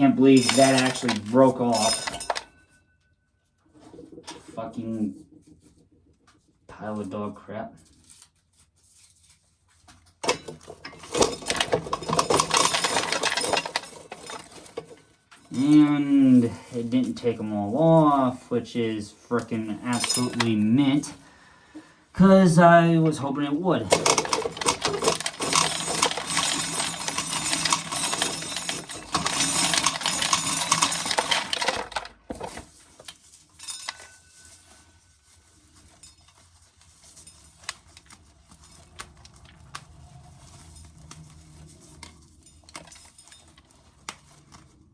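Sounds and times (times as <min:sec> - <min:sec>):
corn kernels rattling and dropping: 0:00.0 - 0:02.5, 0:10.2 - 0:21.2, 0:22.5 - 0:44.8.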